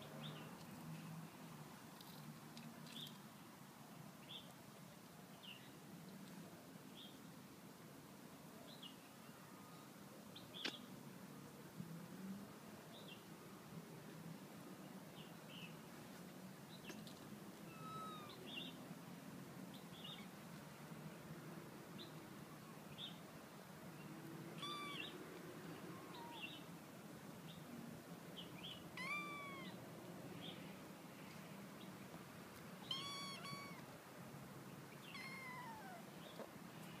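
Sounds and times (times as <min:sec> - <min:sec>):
kittens mewing: 0:17.7 - 0:18.4, 0:24.6 - 0:25.1, 0:25.9 - 0:26.6, 0:29.0 - 0:29.8, 0:32.9 - 0:33.9, 0:35.0 - 0:36.1.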